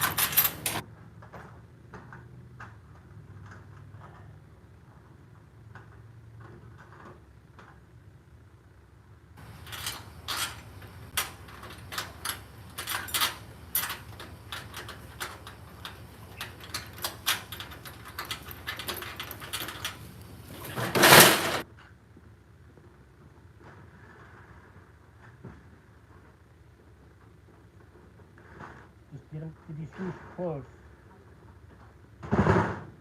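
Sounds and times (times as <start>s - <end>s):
loud metal rattle: 0.0s - 0.8s, 9.4s - 21.6s
metal parts clicking and clattering: 0.0s - 0.8s, 9.4s - 21.6s.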